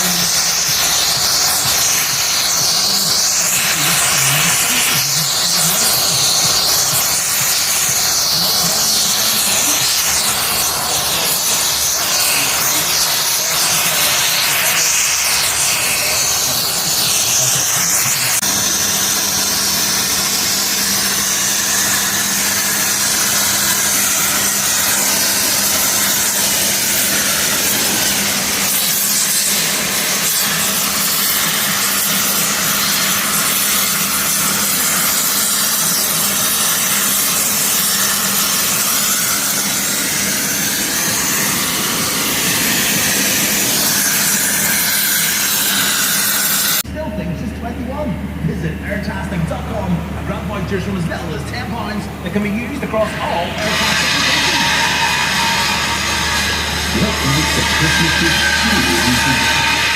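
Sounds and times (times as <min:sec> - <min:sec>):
arc welding hissing and crackling: 0:00.0 - 0:46.8, 0:51.8 - 0:59.9.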